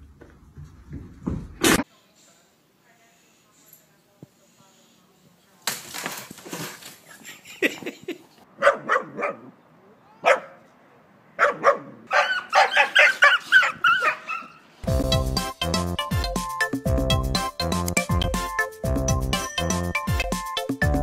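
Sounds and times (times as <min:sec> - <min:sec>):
dog barking: 0:08.6 - 0:09.5, 0:10.2 - 0:10.7, 0:11.4 - 0:14.6.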